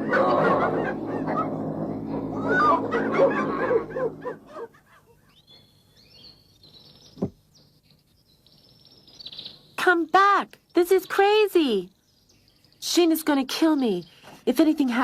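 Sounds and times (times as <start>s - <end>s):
high bird chirps: 5.3s - 13.1s.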